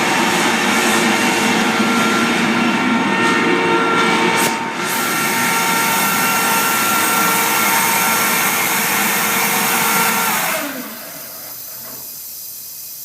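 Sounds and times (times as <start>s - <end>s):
air compressor whining: 0.0s - 13.0s
hiss of air: 4.4s - 13.0s.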